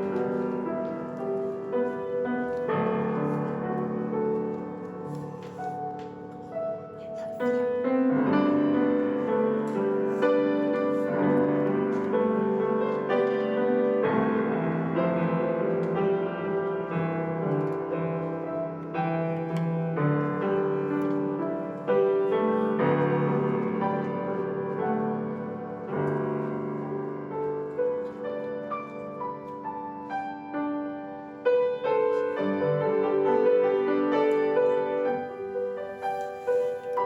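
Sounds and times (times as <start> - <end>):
slow gentle solo piano: 0.0 - 37.0.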